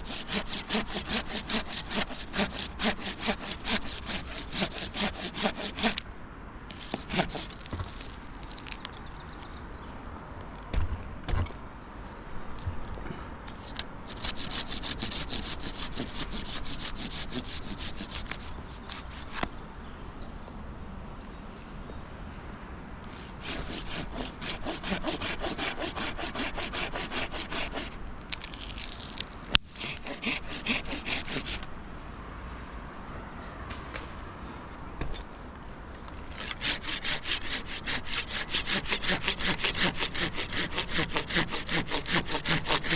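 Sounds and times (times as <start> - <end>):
hand saw cutting wood: 0.0 - 6.0, 6.7 - 8.2, 14.1 - 19.5, 23.1 - 31.7, 36.3 - 42.9.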